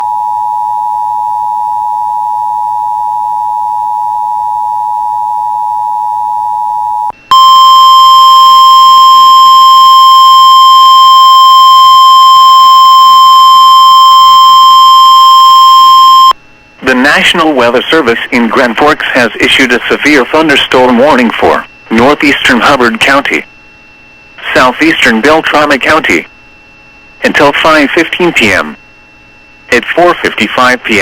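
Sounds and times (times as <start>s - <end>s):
single steady alarm tone: 0.0s - 16.4s
two-tone alert signal: 6.9s - 16.4s.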